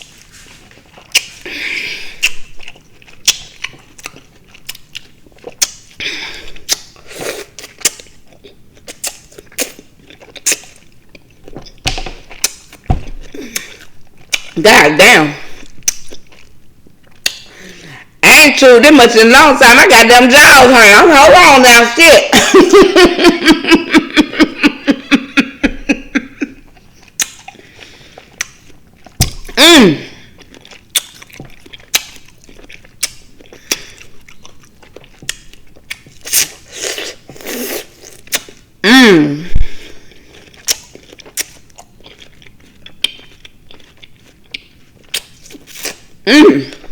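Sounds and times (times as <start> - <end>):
wet chewing of fruit: 0.0 - 18.2, 26.4 - 38.8, 39.5 - 46.9
wet mouth clicks and smacks: 3.2 - 4.9, 5.6 - 5.9, 15.8 - 16.2, 17.2 - 17.5, 27.1 - 27.6, 28.4 - 29.6, 30.9 - 32.4.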